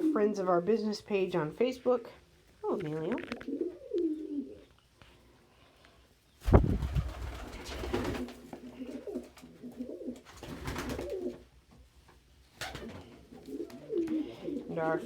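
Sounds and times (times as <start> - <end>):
pigeons cooing: 0.0 - 0.4, 3.0 - 4.7, 6.5 - 11.4, 12.6 - 15.0.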